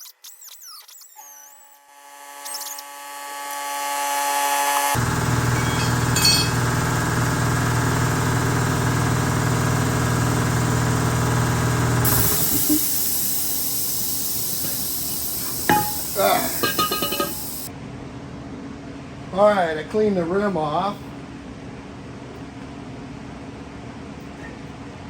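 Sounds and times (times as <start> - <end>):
power tool running: 1.8 - 17.7.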